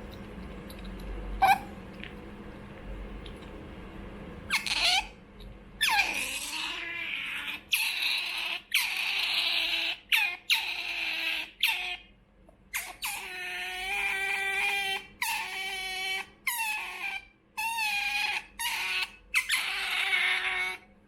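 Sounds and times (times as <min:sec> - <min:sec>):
otter squeaky calls: 0:01.4 - 0:01.7, 0:04.5 - 0:05.1, 0:05.8 - 0:12.0, 0:12.7 - 0:20.8.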